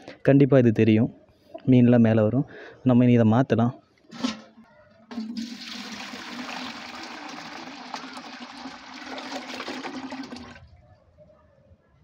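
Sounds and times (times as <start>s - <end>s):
water pouring out in a gush: 5.1s - 10.6s.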